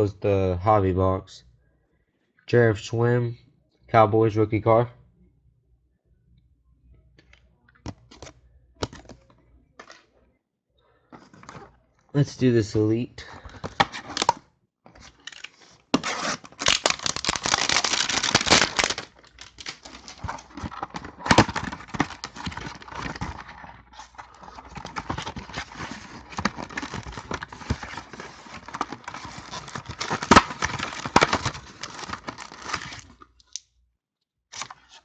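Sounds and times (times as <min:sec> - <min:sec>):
cardboard clicks and scrapes: 0:13.6 - 0:33.2
plastic shrink-wrap crinkling: 0:15.0 - 0:33.3.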